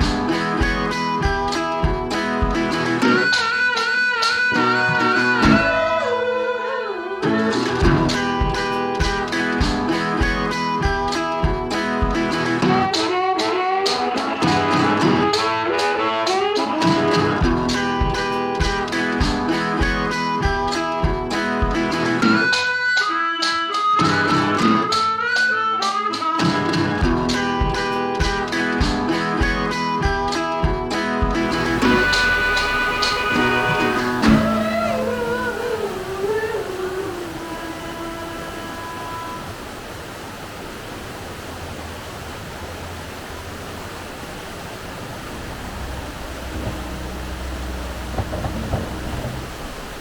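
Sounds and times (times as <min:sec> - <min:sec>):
guitar music with steady beat: 0:00.0 - 0:06.3, 0:07.2 - 0:35.9
low uneven rumble: 0:31.4 - 0:38.4, 0:41.7 - 0:50.0
steady rushing noise: 0:31.4 - 0:50.0.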